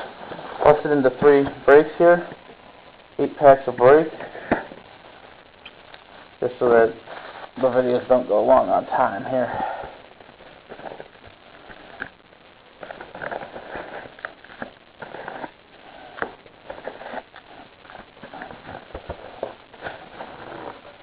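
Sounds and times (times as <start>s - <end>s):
wrappers crinkling and rustling: 12.8s - 21.0s.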